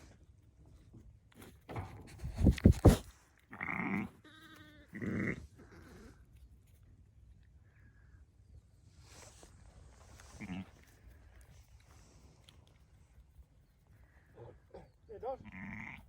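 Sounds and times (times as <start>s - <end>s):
sheep bleating: 3.5s - 5.4s, 15.2s - 16.0s.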